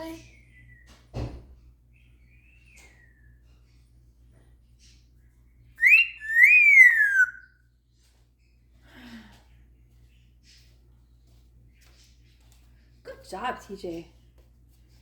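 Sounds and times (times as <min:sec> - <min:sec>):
parrot whistling two notes: 0:05.8 - 0:07.4.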